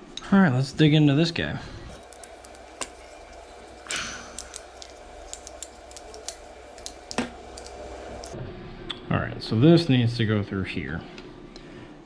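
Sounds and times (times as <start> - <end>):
small tools clicking and tapping: 1.9 - 8.4.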